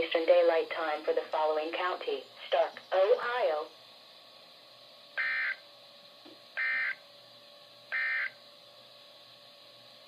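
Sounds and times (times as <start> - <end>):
harsh digital buzzes: 5.2 - 5.6, 6.6 - 7.0, 7.9 - 8.4.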